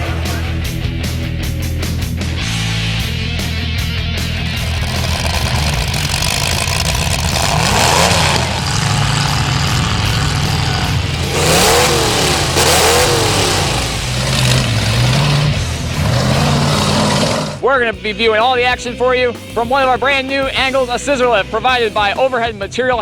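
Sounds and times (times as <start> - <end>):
car engines revving: 0.0 - 17.7.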